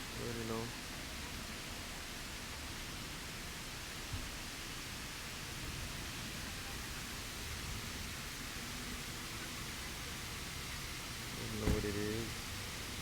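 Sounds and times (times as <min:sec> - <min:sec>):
rushing hiss: 0:07.6 - 0:13.0.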